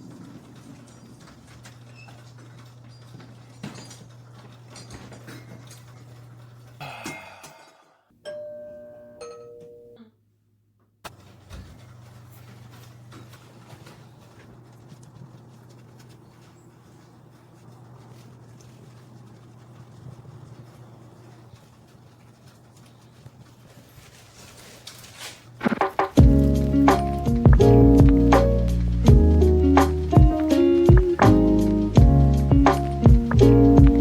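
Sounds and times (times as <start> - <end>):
rustling clatter: 0.0 - 6.8, 11.1 - 34.0
two-note ding-dong chime: 8.3 - 10.1
steady low hum: 11.1 - 24.3, 25.7 - 34.0.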